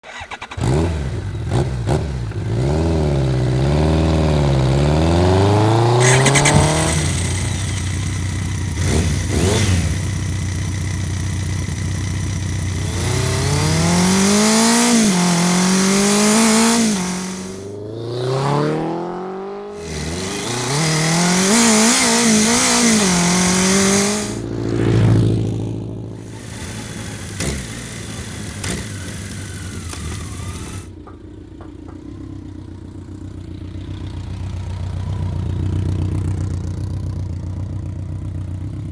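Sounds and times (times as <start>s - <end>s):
motorcycle engine revving: 0.0s - 38.9s
sharp clicks: 6.0s - 9.6s, 26.2s - 30.9s
light engine ticks: 6.0s - 17.7s, 19.8s - 24.4s, 26.2s - 32.4s.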